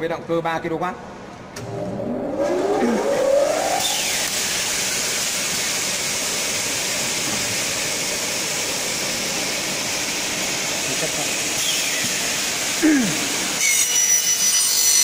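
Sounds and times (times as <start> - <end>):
cutting saw motor whine: 1.6 - 5.0.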